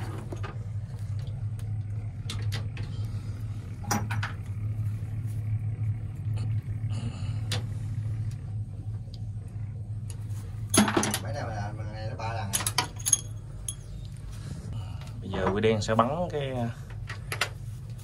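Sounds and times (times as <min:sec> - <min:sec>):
low mechanical hum: 0:00.0 - 0:18.0
metallic clinks of hand tools: 0:12.5 - 0:14.0.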